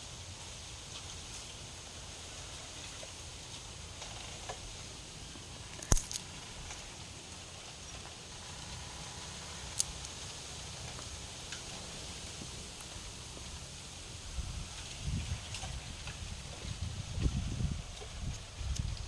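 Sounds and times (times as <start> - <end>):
low background noise: 0.0 - 19.0
sharp clicks: 5.7 - 6.3.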